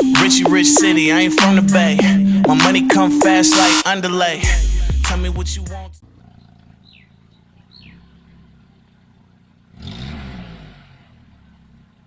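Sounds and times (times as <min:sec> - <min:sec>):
motor vehicle passing: 0:05.2 - 0:12.0.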